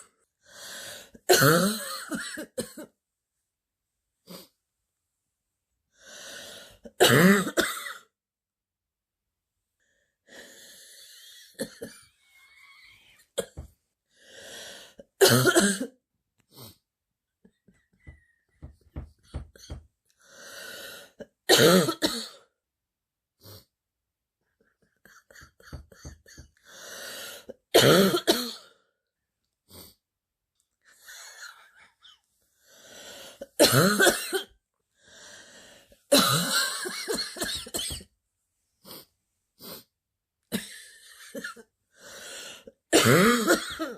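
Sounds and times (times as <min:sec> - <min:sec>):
breath in: 0:00.4 - 0:01.2, 0:06.0 - 0:06.9, 0:14.1 - 0:15.1, 0:20.2 - 0:21.2, 0:26.6 - 0:27.5, 0:32.6 - 0:33.5, 0:35.0 - 0:36.0, 0:41.9 - 0:42.8
girl coughing: 0:01.3 - 0:02.9, 0:07.0 - 0:08.1, 0:15.2 - 0:15.9, 0:21.5 - 0:22.4, 0:27.8 - 0:28.7, 0:33.6 - 0:34.5, 0:36.1 - 0:38.0, 0:42.9 - 0:43.9.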